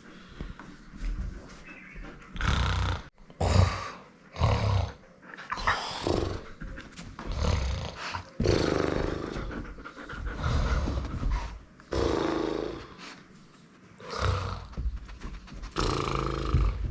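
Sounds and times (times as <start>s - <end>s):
loud snoring and snorts: 2.4s - 5.0s, 7.3s - 9.3s, 15.8s - 16.8s.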